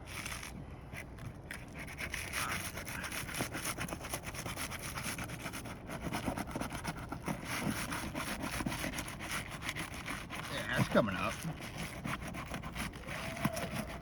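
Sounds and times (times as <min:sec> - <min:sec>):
roof shingles scraping: 0:06.2 - 0:14.0.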